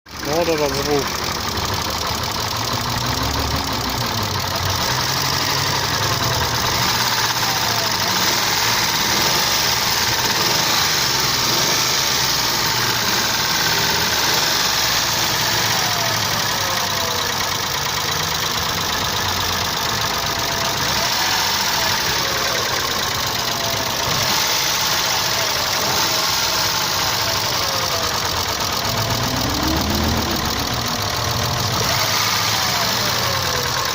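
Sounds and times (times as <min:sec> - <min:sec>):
engine running with lifter tapping: 0:00.1 - 0:33.9.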